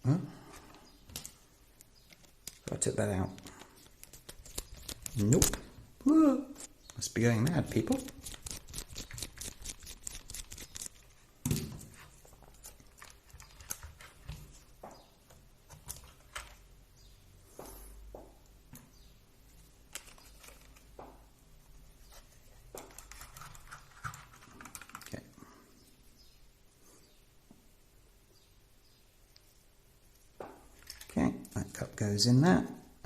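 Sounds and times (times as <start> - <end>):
plastic parts clicking and rattling: 2.1 - 5.7, 7.5 - 14.6, 19.8 - 21.0, 30.7 - 31.6.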